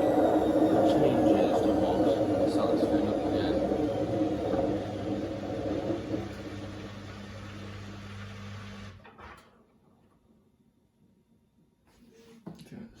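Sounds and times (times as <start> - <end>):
washing machine humming: 0.0 - 9.1.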